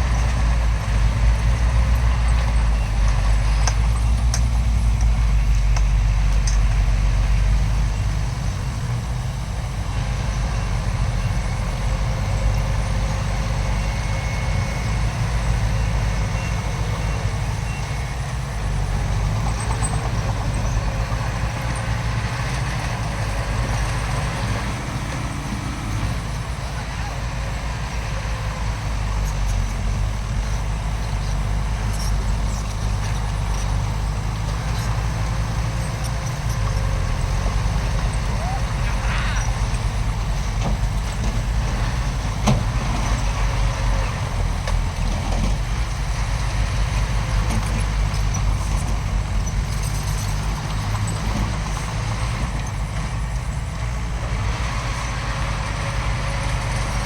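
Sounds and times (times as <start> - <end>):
heavy machinery diesel engine running: 0.0 - 57.0.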